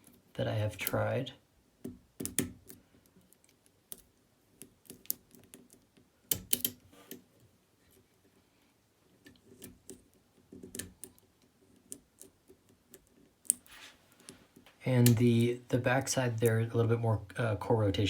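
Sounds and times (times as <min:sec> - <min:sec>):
lock pick metallic clicks: 0:06.3 - 0:07.2.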